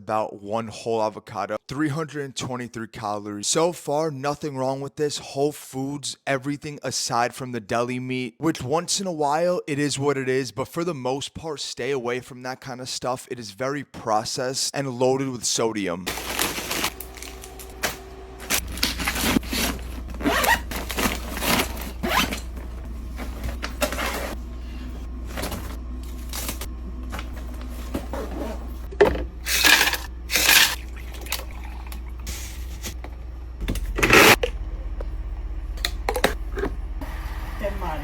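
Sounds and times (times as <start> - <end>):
packaging rustling: 16.1 - 24.4
steady low hum: 16.1 - 38.0.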